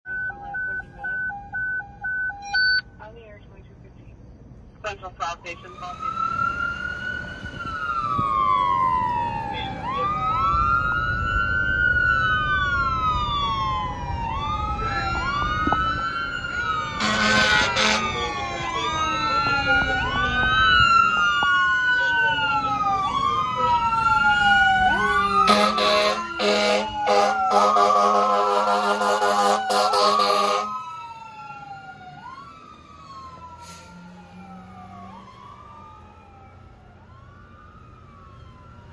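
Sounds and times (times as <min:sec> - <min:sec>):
fire engine siren wailing: 0:00.1 - 0:02.8, 0:05.4 - 0:38.9
truck rumble: 0:00.1 - 0:38.9
air horn blast: 0:17.0 - 0:18.2, 0:25.1 - 0:30.7.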